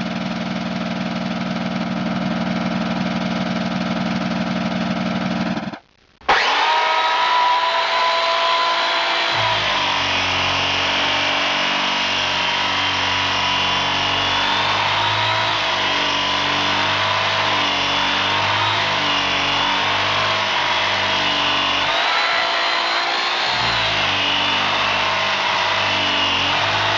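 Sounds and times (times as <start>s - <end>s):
electric motor whining: 6.3s - 26.9s.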